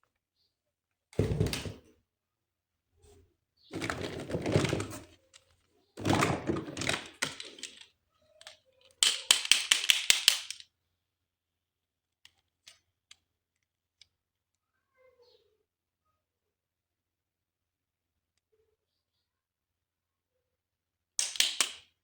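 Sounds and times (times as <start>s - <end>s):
plastic packaging rustling: 3.7s - 5.3s, 6.0s - 7.8s
sharp plastic clicks: 6.0s - 10.7s, 21.2s - 21.9s.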